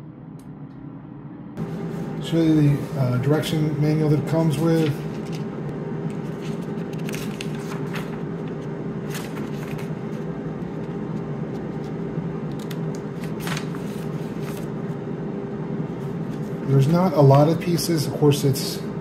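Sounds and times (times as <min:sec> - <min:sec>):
air fryer fan hum: 0:00.0 - 0:19.0
paper pages rustling: 0:04.5 - 0:05.5, 0:06.1 - 0:15.0.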